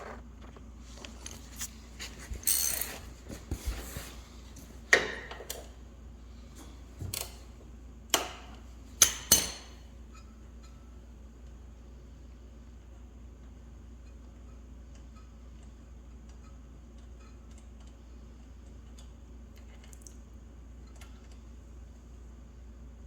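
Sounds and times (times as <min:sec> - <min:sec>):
hand tools clanking on metal: 0:09.0 - 0:09.8.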